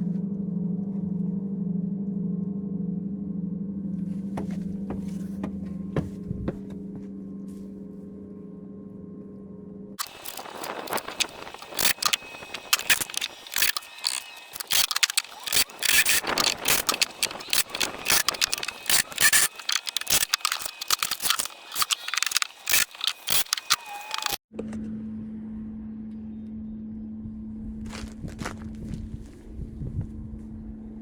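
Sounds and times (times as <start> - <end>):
scraping: 4.2 - 7.1.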